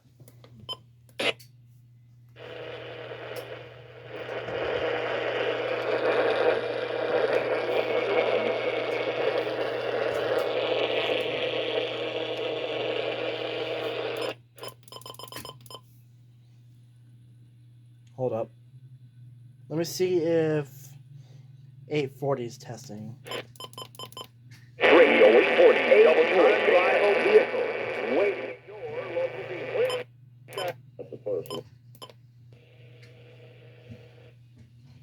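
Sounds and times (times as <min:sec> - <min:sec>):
steady low hum: 0:00.0 - 0:35.0
radio static hissing: 0:02.4 - 0:14.4, 0:24.8 - 0:31.6.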